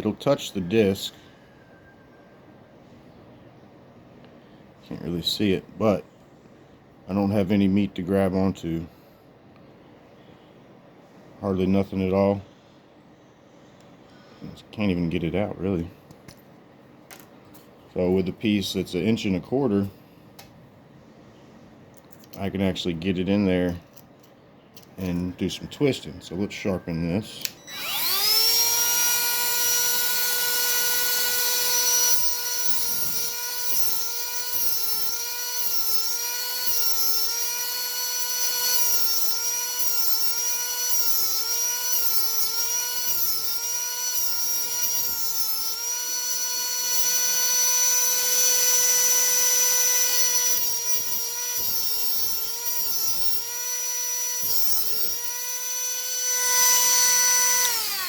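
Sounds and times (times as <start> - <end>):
grinder motor whining: 27.2 - 58.0.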